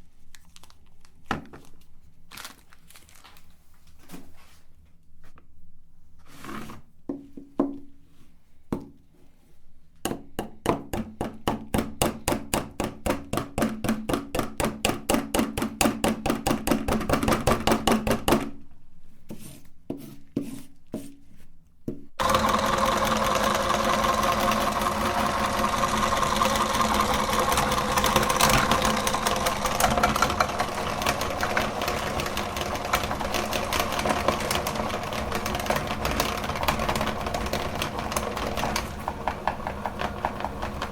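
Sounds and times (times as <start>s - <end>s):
meat grinder grinding: 22.2s - 40.9s
regular clicks: 22.2s - 40.9s.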